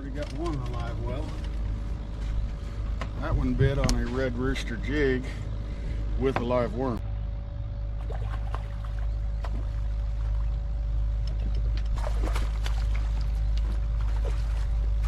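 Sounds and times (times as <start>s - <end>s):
faint steady hum: 0.0s - 15.0s
low rumble: 0.0s - 15.0s
waves splashing against boat hull: 11.6s - 15.0s.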